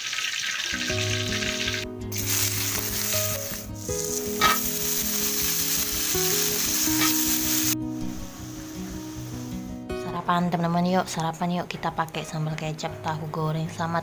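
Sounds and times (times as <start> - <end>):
food sizzling in hot oil: 0.0 - 9.9.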